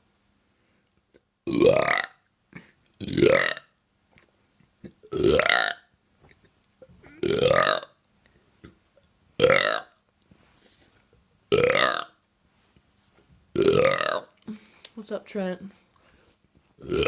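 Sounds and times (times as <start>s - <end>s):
woman belching: 1.5s - 2.2s, 3.0s - 3.7s, 5.0s - 5.8s, 7.0s - 7.9s, 9.4s - 9.9s, 11.5s - 12.1s, 13.6s - 14.3s.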